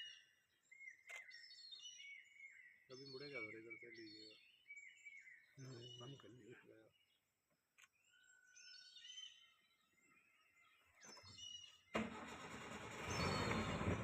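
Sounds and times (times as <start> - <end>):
faint bird chirps: 0.0 - 12.0.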